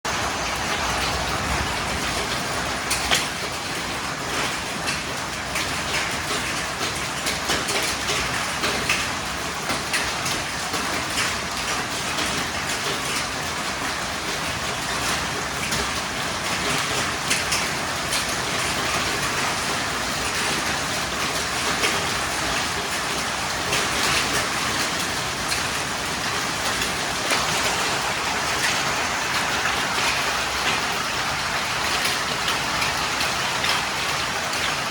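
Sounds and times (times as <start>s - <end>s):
heavy rain hissing: 0.1s - 4.2s, 19.2s - 34.9s.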